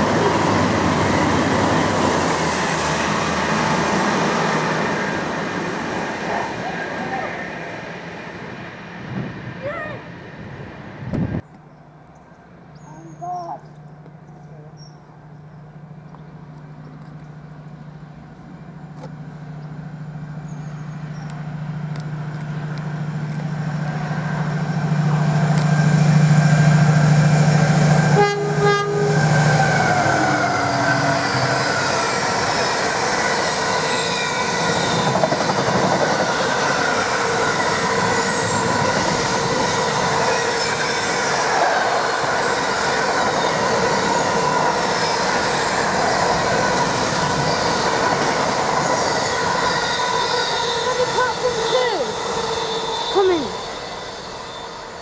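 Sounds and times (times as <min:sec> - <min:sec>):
diesel train engine hum: 0:00.0 - 0:55.0
wheel and rail noise: 0:00.0 - 0:55.0
train horn blast: 0:28.0 - 0:32.4
wheel squeal: 0:46.8 - 0:55.0.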